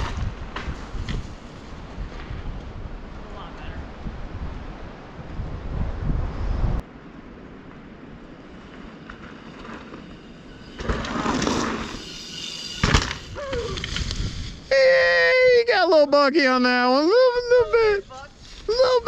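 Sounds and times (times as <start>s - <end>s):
bike landing thud: 0.0s - 1.4s, 12.7s - 14.6s
bike tyres rushing over dirt: 0.0s - 3.1s, 6.8s - 15.0s, 17.4s - 19.0s
wind buffeting microphone: 0.0s - 15.6s, 17.0s - 19.0s.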